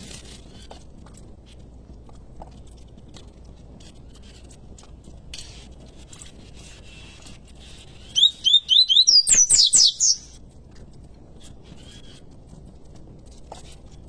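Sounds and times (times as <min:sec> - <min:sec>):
bird whistling and trilling: 0:08.1 - 0:10.4.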